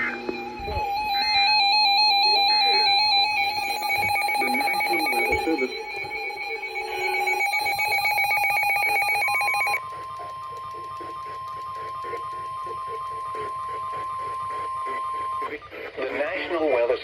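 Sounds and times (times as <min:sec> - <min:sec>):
steady alert tone: 0:00.0 - 0:09.8
pulsing buzzy electronic tone: 0:00.0 - 0:15.5.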